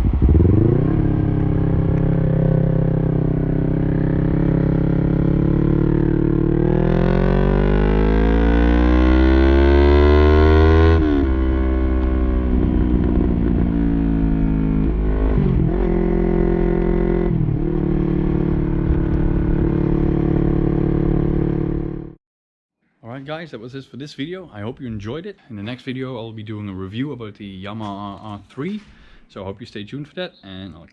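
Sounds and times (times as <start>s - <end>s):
loud motorcycle engine revving: 0.0s - 22.2s.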